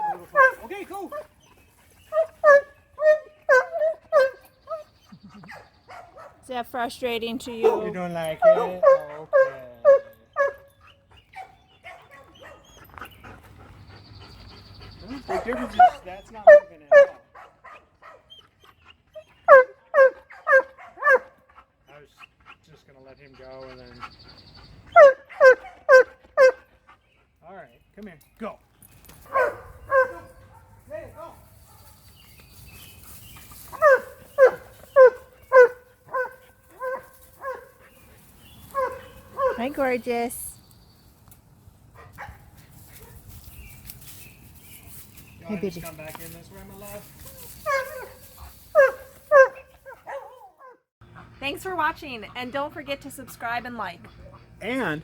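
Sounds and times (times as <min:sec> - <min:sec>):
dog barking high: 0:02.2 - 0:04.4, 0:19.5 - 0:21.3, 0:25.0 - 0:26.6, 0:29.3 - 0:30.8, 0:33.8 - 0:37.7, 0:38.7 - 0:39.7, 0:47.6 - 0:50.8.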